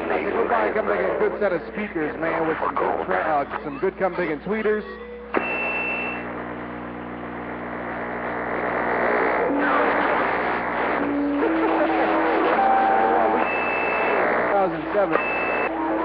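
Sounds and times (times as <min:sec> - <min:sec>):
warbling radio tones: 0:00.0 - 0:04.8, 0:07.3 - 0:16.0
radio static hiss: 0:00.0 - 0:16.0.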